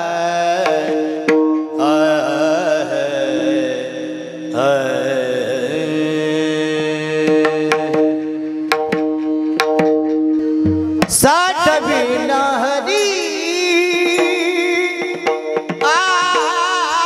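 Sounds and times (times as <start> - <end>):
drum strokes: 7.3 - 17.0.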